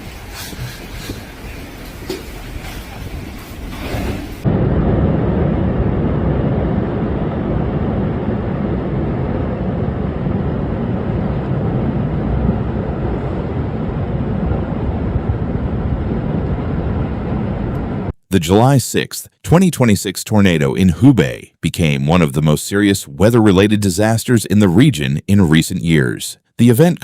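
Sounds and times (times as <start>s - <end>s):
strong storm wind roaring: 0.0s - 18.6s.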